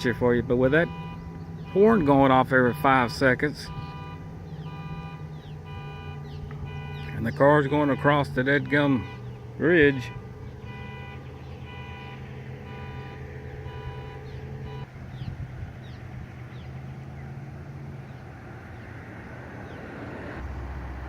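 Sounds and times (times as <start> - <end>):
car alarm horn honks: 0.0 - 14.9
low rumble of vehicles: 0.0 - 21.0.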